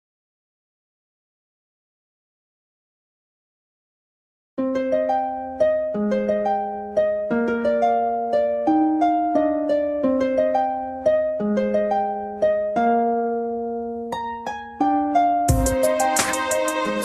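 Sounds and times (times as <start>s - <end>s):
harp-like plucked melody with chords: 4.6s - 17.0s.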